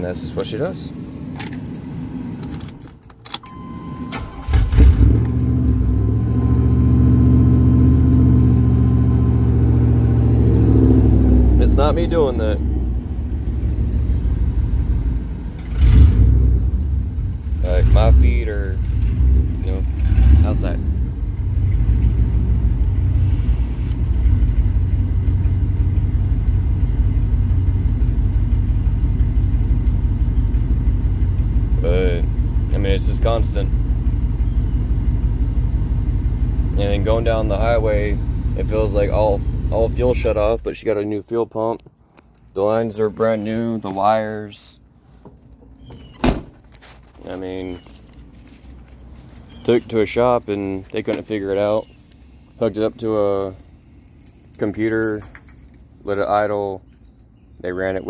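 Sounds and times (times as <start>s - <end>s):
truck engine starting and idling: 0.0s - 58.0s.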